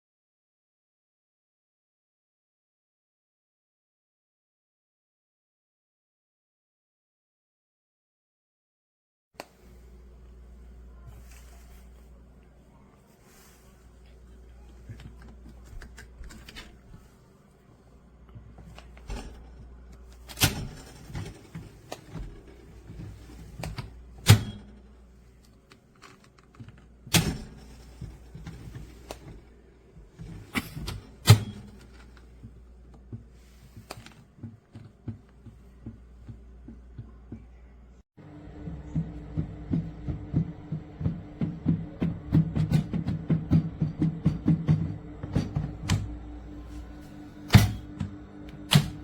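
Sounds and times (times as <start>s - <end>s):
steady low hum: 9.6s - 49.0s
handling clunks and clicks: 18.3s - 37.4s, 38.6s - 49.0s.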